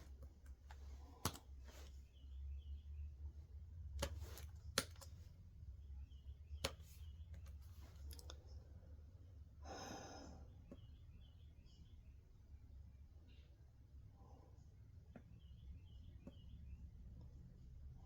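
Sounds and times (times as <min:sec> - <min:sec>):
low steady hum: 0:00.0 - 0:18.0
person exhaling: 0:09.6 - 0:10.5.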